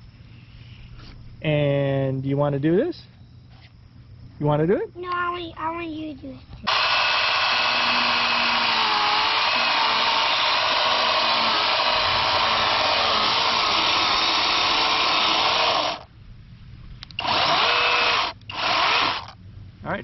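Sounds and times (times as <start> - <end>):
mini chainsaw cutting pumpkin: 6.7 - 16.1, 17.2 - 19.4.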